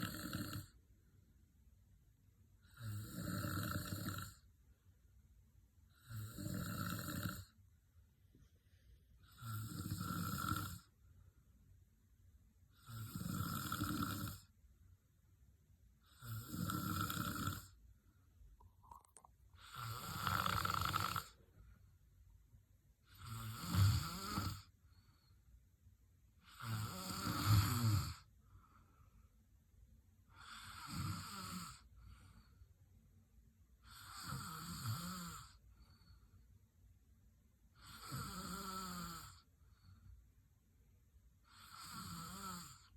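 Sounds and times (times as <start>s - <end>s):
loud snoring: 0.0s - 0.8s, 2.6s - 4.4s, 6.0s - 7.6s, 9.2s - 10.9s, 12.8s - 14.5s, 16.0s - 17.8s, 19.6s - 21.4s, 23.1s - 24.7s, 26.4s - 28.3s, 30.3s - 31.9s, 33.8s - 35.6s, 37.8s - 39.5s, 41.5s - 42.9s
quiet breaths: 0.0s - 42.9s.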